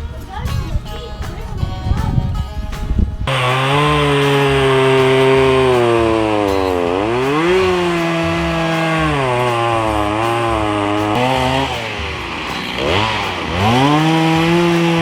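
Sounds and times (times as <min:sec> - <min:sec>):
chainsaw cutting wood: 0:03.3 - 0:15.0.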